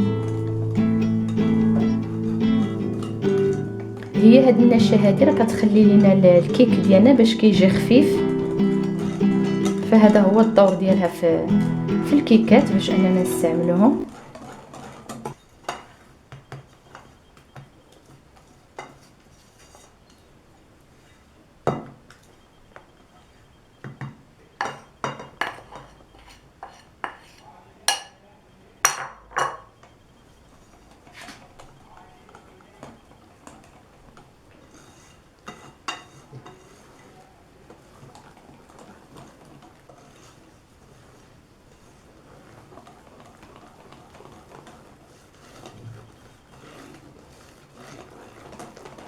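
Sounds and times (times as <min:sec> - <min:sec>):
utensils clinking against mixing bowl: 0:01.2 - 0:16.0, 0:24.6 - 0:28.2
utensil scraping mixing bowl: 0:42.8 - 0:49.0.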